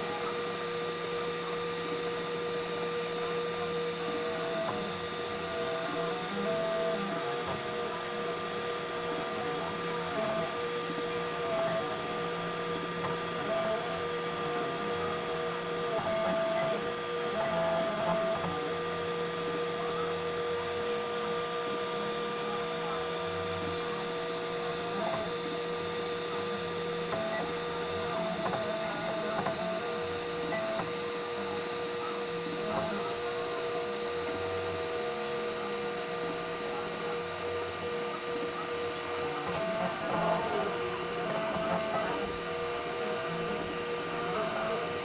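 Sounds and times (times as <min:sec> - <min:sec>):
cooling fans noise: 0:00.0 - 0:45.0
printer stepper motors singing: 0:00.0 - 0:45.0.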